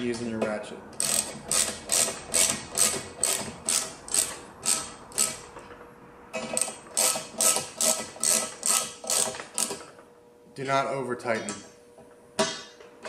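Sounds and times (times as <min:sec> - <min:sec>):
ratchet wrench clicking: 0:01.0 - 0:05.5, 0:06.5 - 0:09.8.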